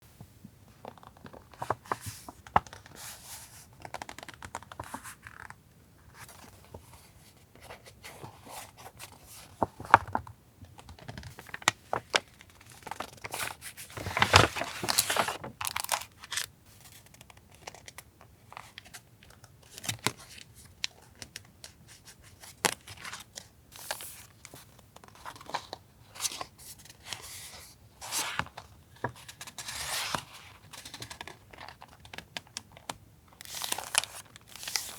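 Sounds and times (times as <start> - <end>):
paper rustling and tearing: 12.8 - 16.5.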